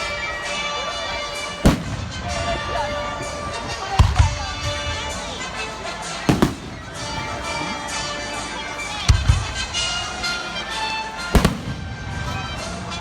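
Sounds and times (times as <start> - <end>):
background music: 0.0 - 13.0
fireworks crack: 0.0 - 13.0
fireworks bangs: 1.3 - 8.0, 9.0 - 10.4, 11.2 - 13.0.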